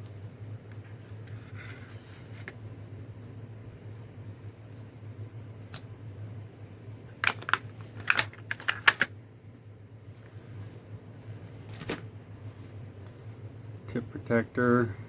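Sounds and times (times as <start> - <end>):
plastic packaging clicks and rattles: 7.2 - 9.1.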